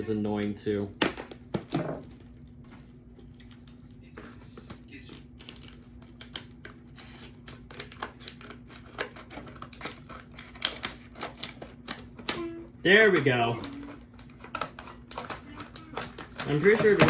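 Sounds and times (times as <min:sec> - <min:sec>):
plastic scraping crinkle: 0:01.0 - 0:17.0
plastic packaging cracking: 0:05.0 - 0:17.0.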